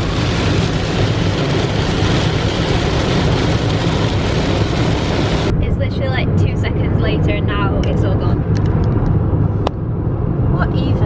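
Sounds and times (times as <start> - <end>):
heavy rain on a car: 0.0 - 5.5
tyre spray and road rumble: 0.0 - 5.5.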